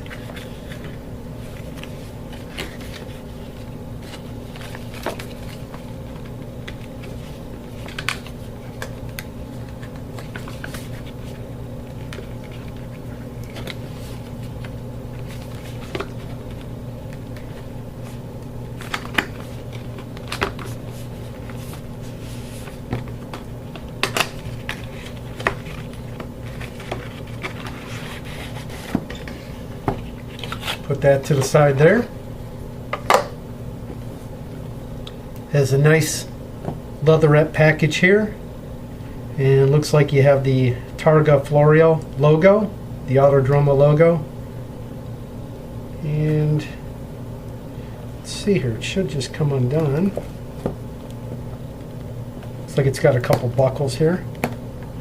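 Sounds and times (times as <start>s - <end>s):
packaging rustling: 0.0s - 31.0s
steady low hum: 0.0s - 55.0s.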